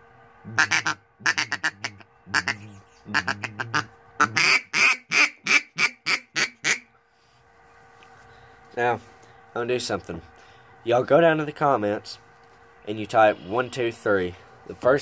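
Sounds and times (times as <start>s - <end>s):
duck call quacks: 0.5s - 6.9s.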